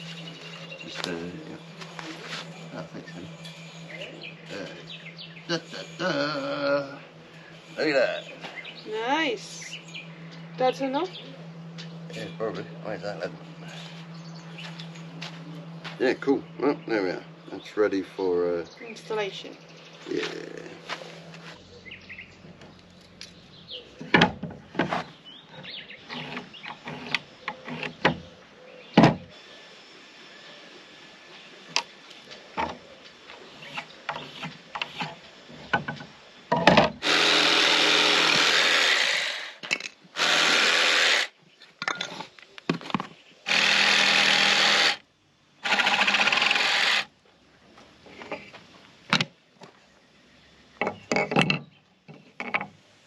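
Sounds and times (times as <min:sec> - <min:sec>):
power tool running: 0:25.8 - 0:28.2, 0:36.6 - 0:41.4, 0:43.4 - 0:45.0, 0:45.6 - 0:47.1.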